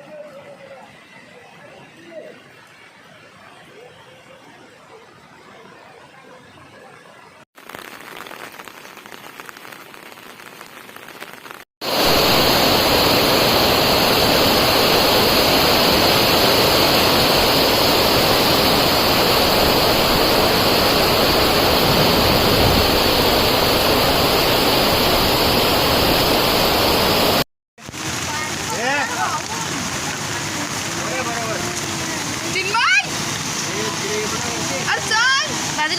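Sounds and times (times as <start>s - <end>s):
water rushing: 7.6s - 35.9s.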